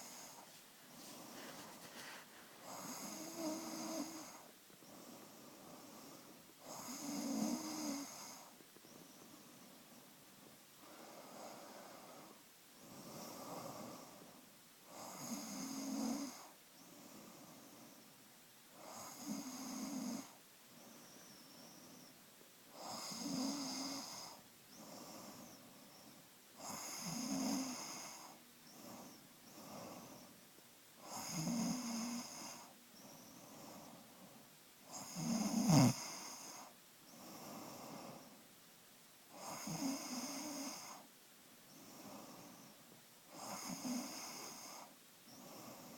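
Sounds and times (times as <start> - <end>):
soft breathing: 0.0 - 14.6, 20.2 - 31.2, 31.8 - 38.5, 41.7 - 45.9
rasping snore: 2.6 - 4.5, 6.0 - 8.4, 14.9 - 16.5, 18.8 - 20.3, 22.8 - 25.3, 26.6 - 30.2, 31.0 - 32.7, 34.9 - 38.2, 39.3 - 41.0, 43.3 - 45.9.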